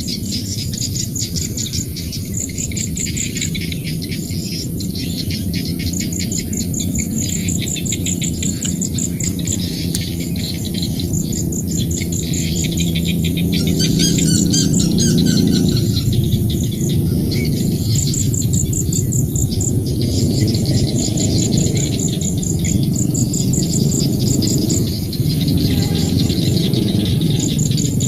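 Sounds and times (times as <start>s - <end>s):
birds chirping: 0.0s - 28.0s
frogs chorus: 0.0s - 28.0s
insects trilling: 0.0s - 28.0s.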